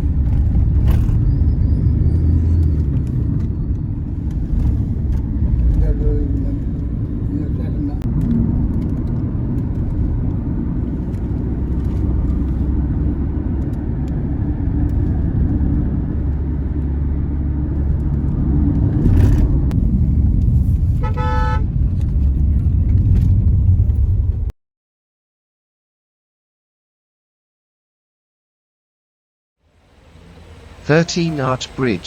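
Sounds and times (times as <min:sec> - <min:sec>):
car driving rumble: 0:00.0 - 0:24.5, 0:29.7 - 0:32.0
vehicle horn toot: 0:21.0 - 0:21.7.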